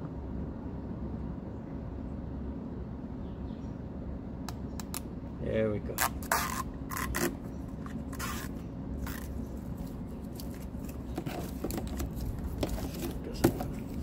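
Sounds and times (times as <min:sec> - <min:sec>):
tape peeling and scraping: 0:05.9 - 0:14.0.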